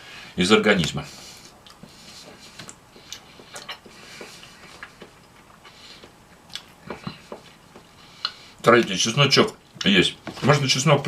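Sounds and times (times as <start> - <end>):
person chewing food: 1.2 - 8.6.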